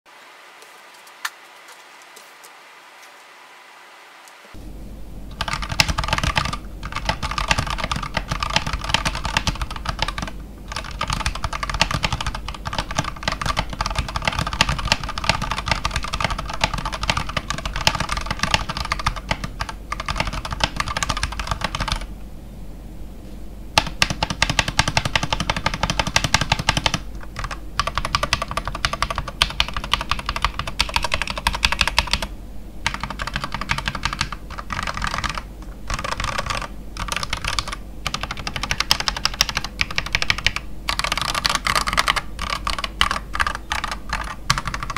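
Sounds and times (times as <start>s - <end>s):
mechanical keyboard typing: 5.3s - 22.1s, 23.8s - 44.9s.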